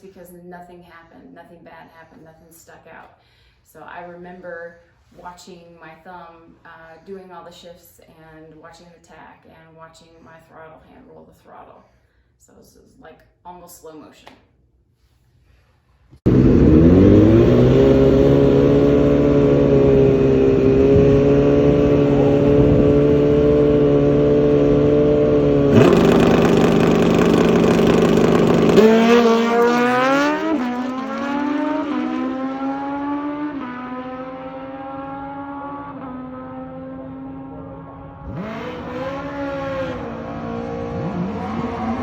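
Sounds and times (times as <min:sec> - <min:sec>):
motorcycle engine revving: 0:16.2 - 0:42.0.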